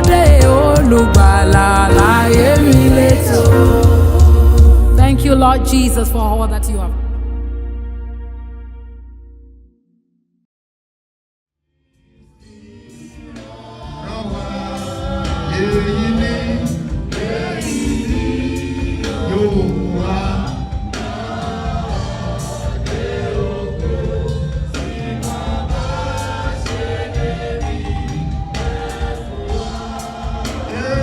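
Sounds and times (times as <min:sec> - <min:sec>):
instrumental backing with drum beat: 0:00.0 - 0:06.1, 0:13.2 - 0:31.0
gospel choir singing: 0:00.0 - 0:07.6, 0:12.4 - 0:31.0.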